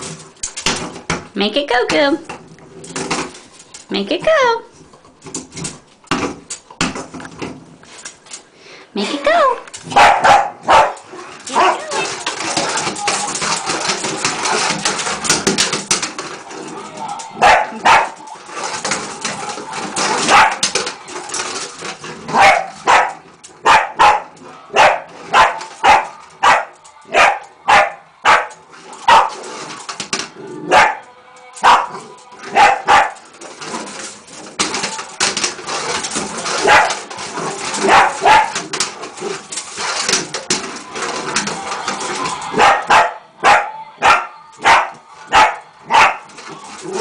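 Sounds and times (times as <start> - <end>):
dog barking: 9.9 - 11.9, 17.4 - 18.2, 20.3 - 20.6, 22.4 - 28.5, 29.1 - 29.3, 30.7 - 31.0, 31.6 - 31.9, 32.6 - 33.2, 37.8 - 38.5, 42.6 - 46.2.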